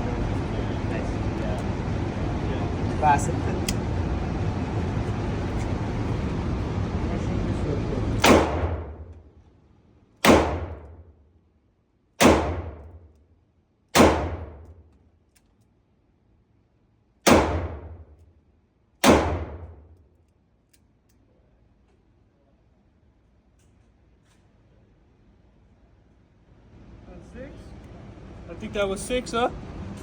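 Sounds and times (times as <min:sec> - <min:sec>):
revolver shots: 0:08.2 - 0:09.1, 0:10.2 - 0:11.0, 0:12.2 - 0:12.9.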